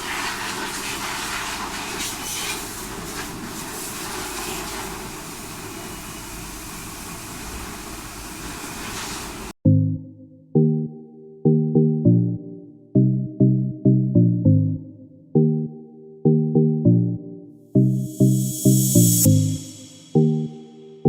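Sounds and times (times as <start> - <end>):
synth music: 9.6 - 21.0.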